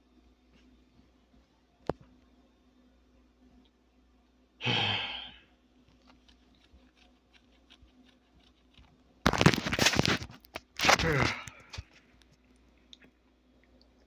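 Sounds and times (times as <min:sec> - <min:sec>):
man sighing: 0:04.6 - 0:05.5, 0:11.0 - 0:11.6.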